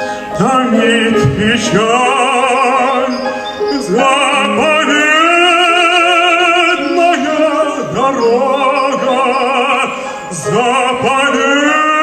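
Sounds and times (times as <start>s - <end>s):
operatic singing: 0.0s - 12.0s.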